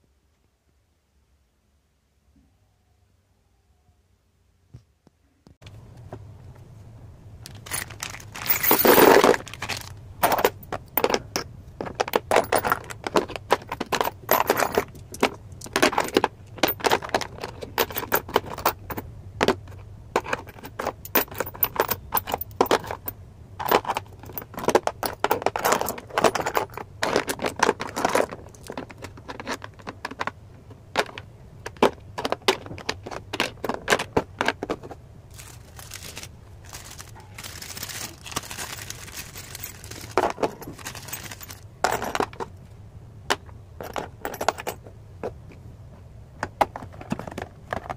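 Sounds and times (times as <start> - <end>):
packaging rustle: 7.5 - 10.0, 35.3 - 41.6
hard parts clattering: 7.5 - 42.6, 43.3 - 44.8.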